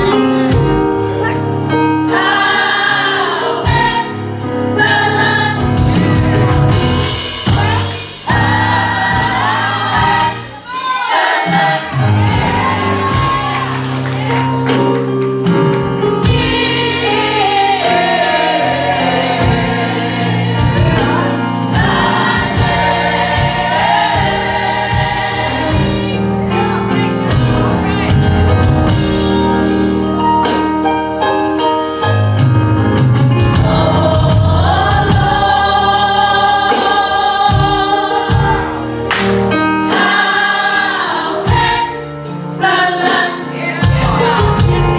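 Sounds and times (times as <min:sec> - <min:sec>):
gospel choir singing: 0:00.0 - 0:31.6, 0:33.3 - 0:44.9
sustained bass: 0:05.6 - 0:10.5, 0:15.6 - 0:31.2, 0:32.3 - 0:38.8.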